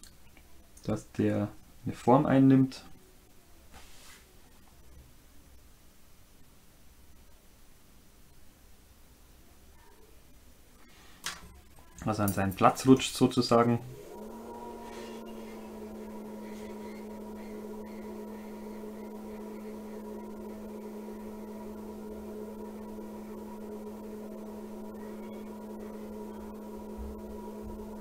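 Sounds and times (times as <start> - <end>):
hot-air station blowing: 10.9 - 28.0.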